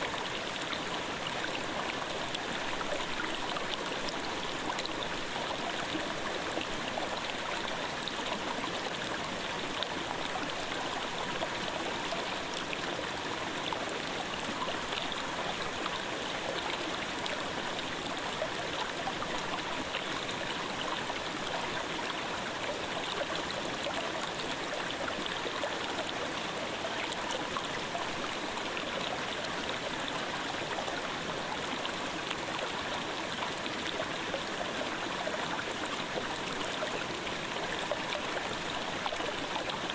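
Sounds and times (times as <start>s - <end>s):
mountain stream babbling: 0.0s - 39.9s.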